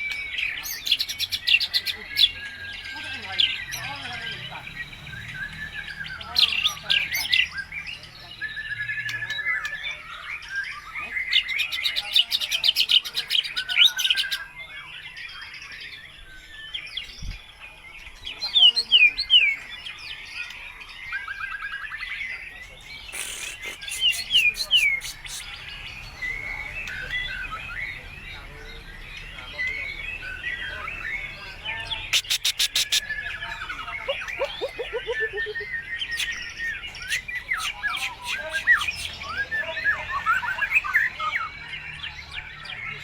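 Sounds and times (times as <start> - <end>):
bird singing varied song: 0.0 - 43.0
bird rattling trills: 32.1 - 33.2, 34.1 - 39.3.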